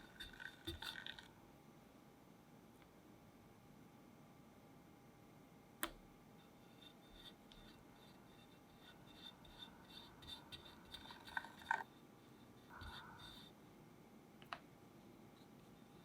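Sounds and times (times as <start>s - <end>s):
spatula scraping cream: 0.0s - 1.3s, 6.4s - 13.6s.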